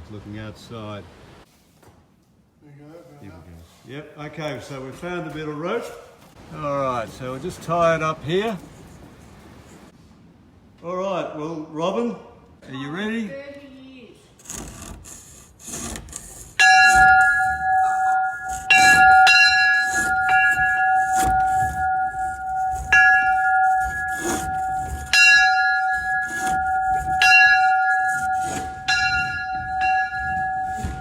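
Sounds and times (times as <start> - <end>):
church bell ringing: 16.6 - 31.0.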